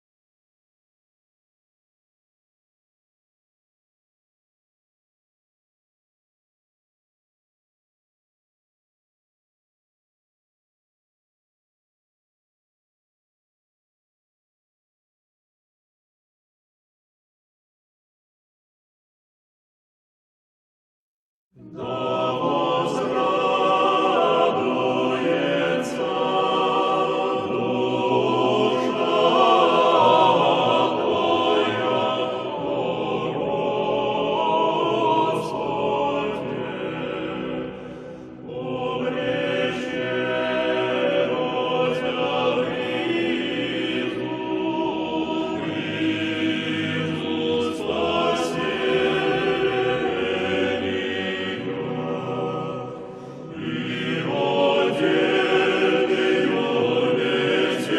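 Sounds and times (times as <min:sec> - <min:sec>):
choir singing: 0:21.6 - 0:57.9.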